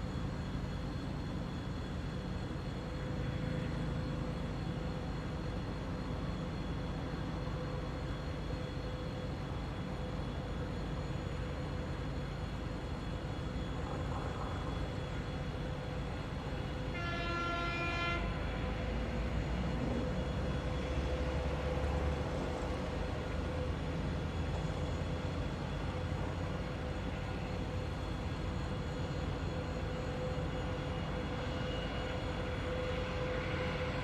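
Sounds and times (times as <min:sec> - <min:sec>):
diesel locomotive rumbling: 0:13.2 - 0:34.0
locomotive horn: 0:16.8 - 0:18.7.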